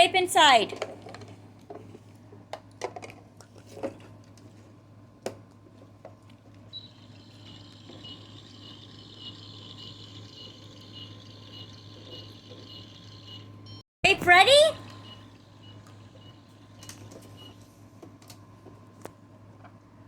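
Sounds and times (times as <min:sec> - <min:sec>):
pulsing high electronic tone: 0:06.8 - 0:13.6.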